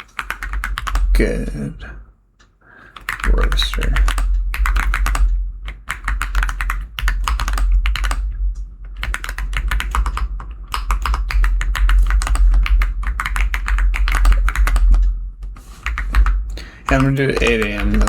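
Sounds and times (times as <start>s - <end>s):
keyboard typing: 0.0s - 1.6s, 2.8s - 8.3s, 8.9s - 18.0s
low steady hum: 0.0s - 18.0s.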